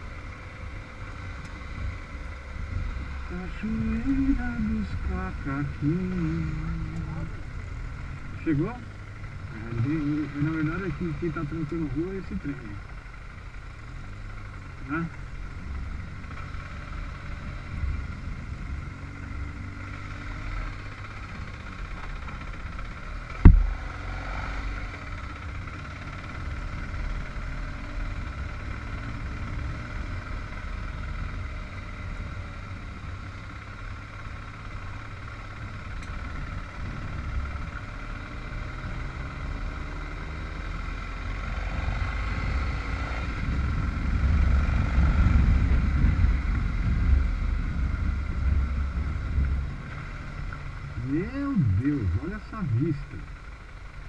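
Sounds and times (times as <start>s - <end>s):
vehicle engine running: 0.0s - 54.0s
sharp knock: 23.5s - 23.7s.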